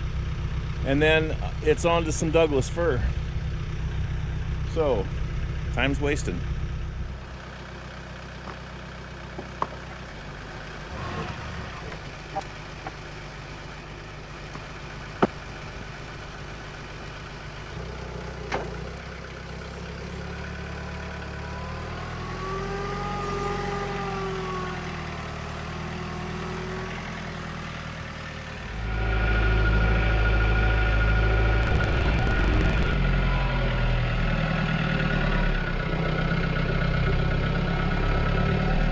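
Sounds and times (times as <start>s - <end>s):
engine running: 0.0s - 38.9s
whine rising and falling: 31.5s - 33.0s.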